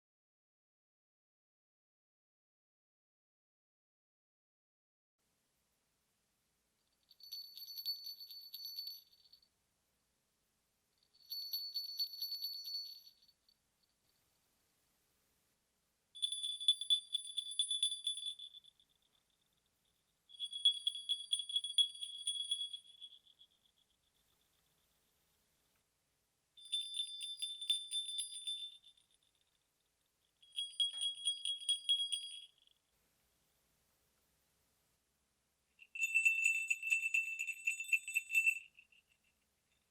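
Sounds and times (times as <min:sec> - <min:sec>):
sleigh bells jingling: 0:07.0 - 0:09.5, 0:11.0 - 0:13.4, 0:16.2 - 0:25.0, 0:26.6 - 0:32.9, 0:35.8 - 0:39.9.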